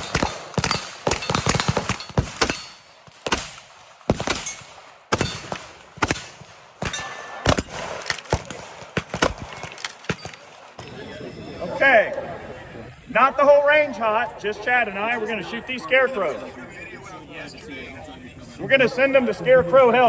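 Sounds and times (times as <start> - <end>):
gunshots: 0.0 - 10.9.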